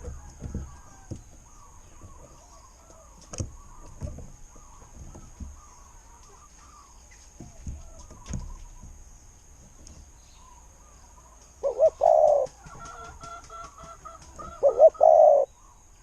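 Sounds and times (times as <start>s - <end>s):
dove cooing: 11.6s - 13.1s, 13.7s - 15.5s.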